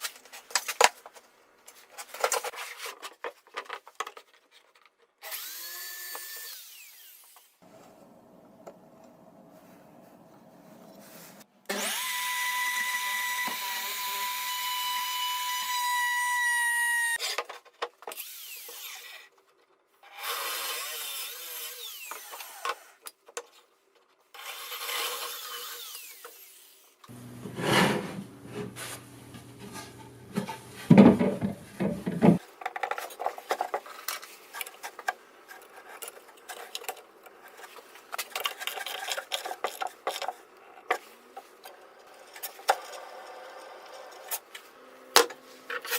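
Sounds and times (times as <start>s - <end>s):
tool scraping and clattering wood: 27.1s - 41.6s.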